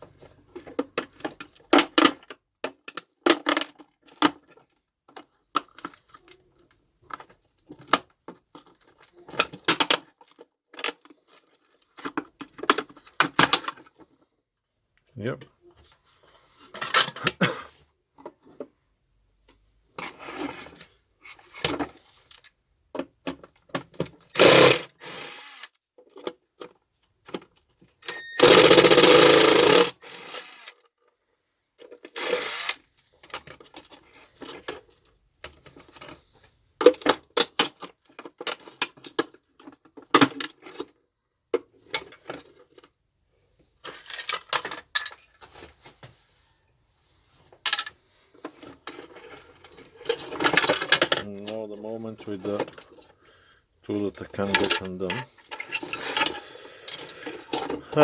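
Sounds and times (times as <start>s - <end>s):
hand tools on plastic housing: 47.4s - 53.2s, 53.9s - 58.0s.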